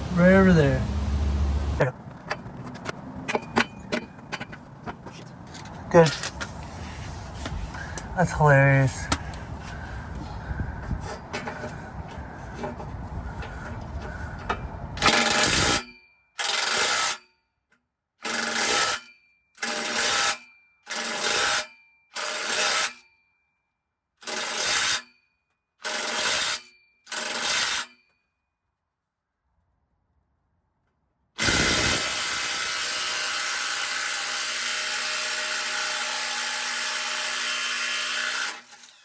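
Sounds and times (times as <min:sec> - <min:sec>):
power tool bursts with whine: 0:15.0 - 0:17.2, 0:31.4 - 0:39.0.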